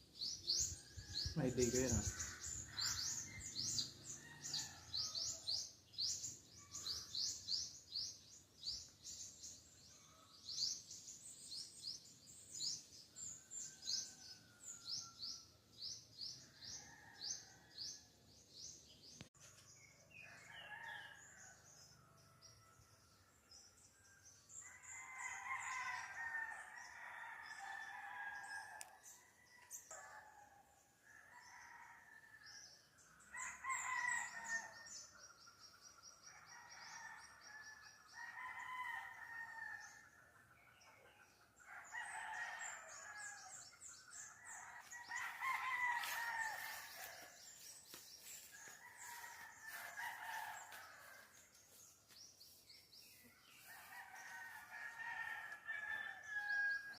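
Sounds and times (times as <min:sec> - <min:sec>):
roosters crowing: 0:44.6 - 0:47.2, 0:48.7 - 0:51.2, 0:53.6 - 0:57.0.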